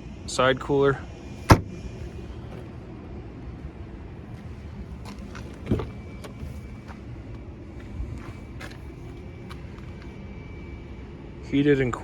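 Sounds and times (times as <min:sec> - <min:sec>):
steady low rumble: 0:00.8 - 0:10.2.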